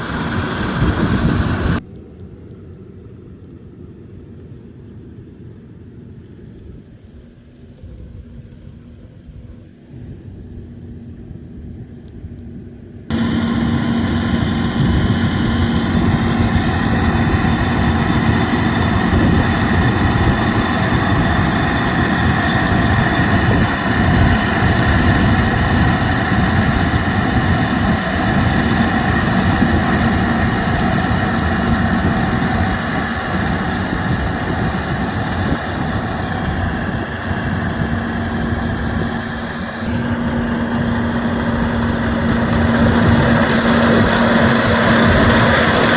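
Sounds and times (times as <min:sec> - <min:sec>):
combine harvester running: 0:00.0 - 0:01.9, 0:12.6 - 0:45.9
held whine: 0:00.0 - 0:04.8, 0:12.9 - 0:45.9.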